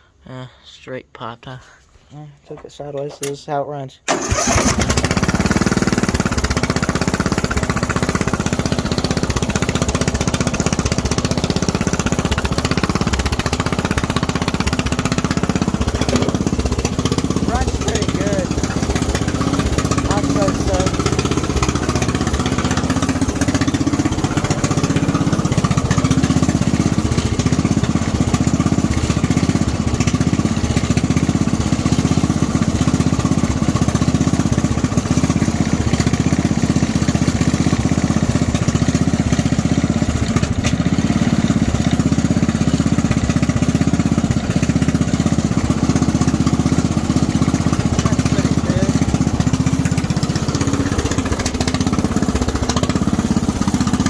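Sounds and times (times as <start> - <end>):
lawnmower engine running: 4.1 - 54.0.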